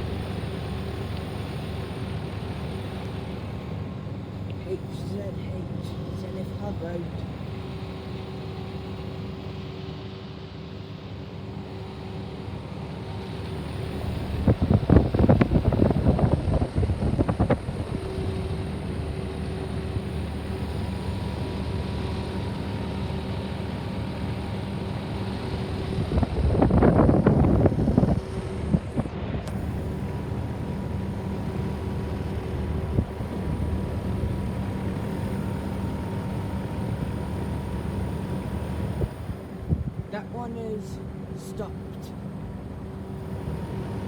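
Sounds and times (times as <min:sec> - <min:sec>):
machinery hum: 0:00.0 - 0:44.0
wind on microphone: 0:14.1 - 0:18.9, 0:25.5 - 0:34.6, 0:38.9 - 0:40.1.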